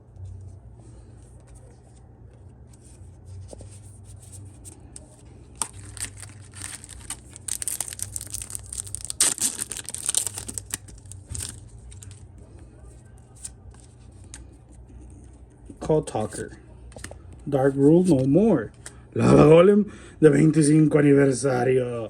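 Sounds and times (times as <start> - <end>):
foil pack crinkling: 5.5 - 12.2
sharp foil crackles: 5.5 - 12.2.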